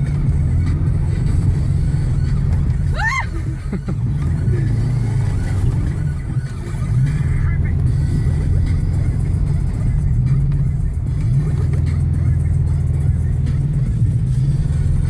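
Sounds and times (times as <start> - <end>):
car engine idling: 0.0 - 15.0
rising and falling whoop: 2.9 - 3.4.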